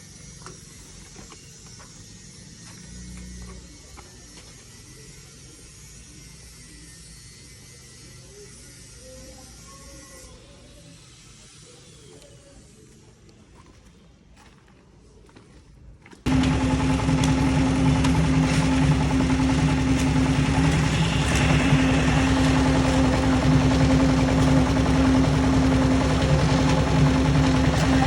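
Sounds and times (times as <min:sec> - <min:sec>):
construction machine engine throbbing: 0:16.3 - 0:28.0.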